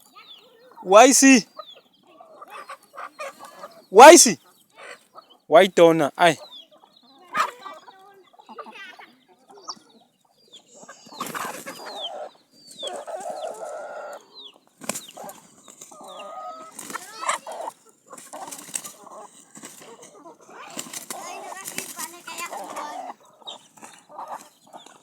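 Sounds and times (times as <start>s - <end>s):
chickens clucking: 0.0s - 25.0s
short high falling calls: 0.9s - 1.4s, 3.9s - 4.4s.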